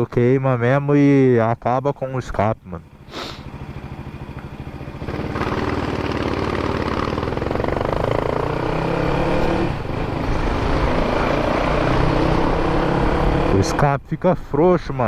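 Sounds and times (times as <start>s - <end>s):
motorcycle engine accelerating: 2.8s - 13.9s.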